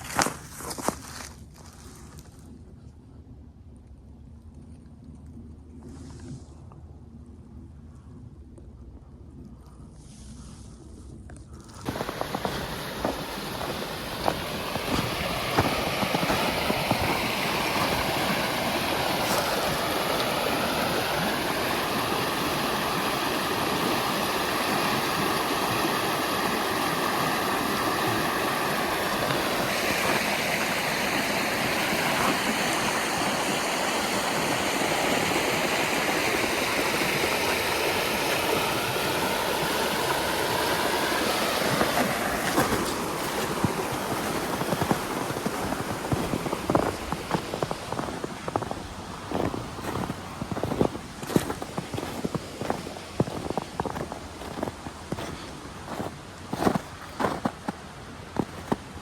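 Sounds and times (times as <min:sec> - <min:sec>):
river water rushing: 0:11.9 - 0:59.0.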